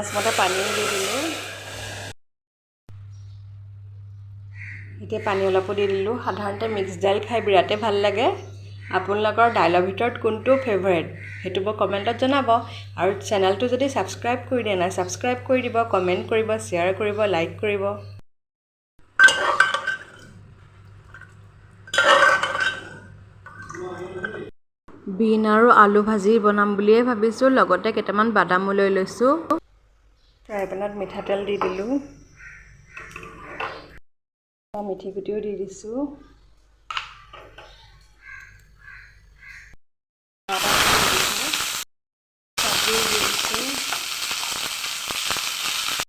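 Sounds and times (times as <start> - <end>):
food sizzling in oil: 0.0 - 2.2, 40.5 - 41.9, 42.6 - 46.0
crow cawing: 4.5 - 5.6, 11.1 - 11.6, 32.3 - 33.0, 38.2 - 39.8
metal utensils clattering on cookware: 19.2 - 20.4, 21.0 - 24.4.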